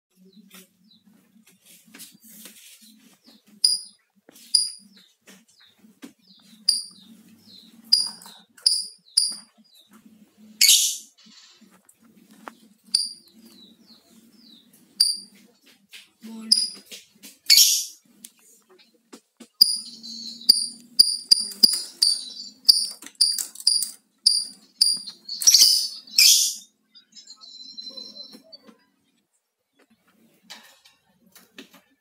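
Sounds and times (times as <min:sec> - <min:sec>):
bird high-pitched chirps: 0:03.4 - 0:05.0, 0:06.3 - 0:09.5, 0:10.6 - 0:11.5, 0:12.9 - 0:15.4, 0:16.3 - 0:16.8, 0:17.5 - 0:18.0, 0:19.6 - 0:28.9.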